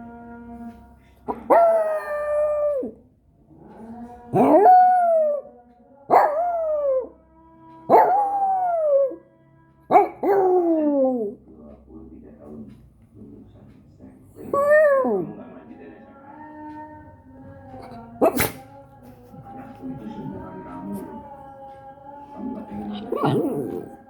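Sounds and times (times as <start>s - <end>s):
dog howling: 1.3s - 3.0s, 3.8s - 7.2s, 7.9s - 9.3s, 9.9s - 11.4s, 14.4s - 15.3s, 22.4s - 24.0s.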